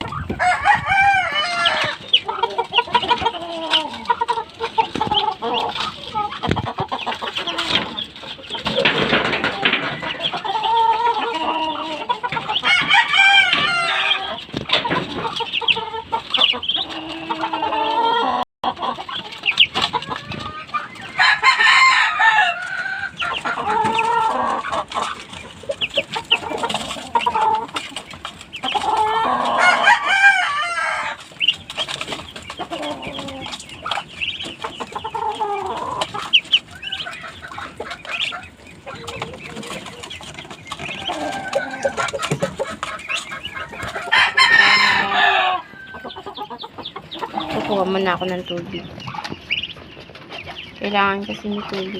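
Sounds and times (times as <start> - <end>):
poultry clucking: 0.0 - 51.9
rooster crowing: 0.3 - 2.0, 12.6 - 14.3, 21.2 - 24.6, 29.1 - 31.2, 43.9 - 46.3.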